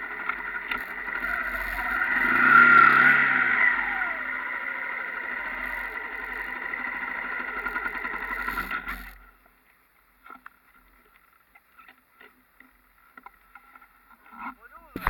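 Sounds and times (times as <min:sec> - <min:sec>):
dirt bike engine running: 0:00.0 - 0:15.0
faint ticks: 0:00.2 - 0:03.0, 0:07.4 - 0:15.0.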